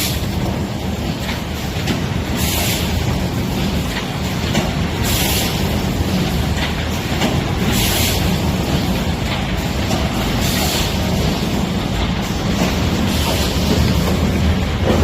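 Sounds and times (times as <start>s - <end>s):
machine mechanical rumble: 0.0s - 15.0s
machine hiss bursts: 2.3s - 3.1s, 7.5s - 8.8s, 9.6s - 14.0s.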